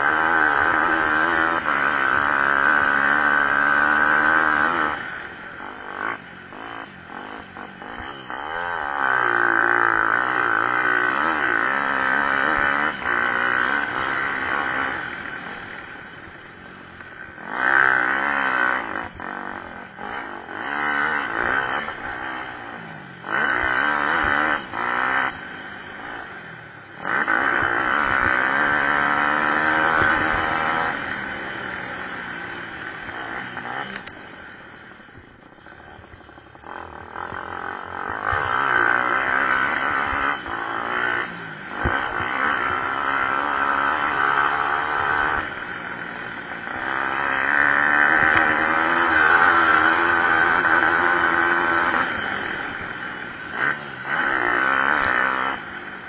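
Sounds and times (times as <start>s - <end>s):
motorbike engines revving past: 0.0s - 56.0s.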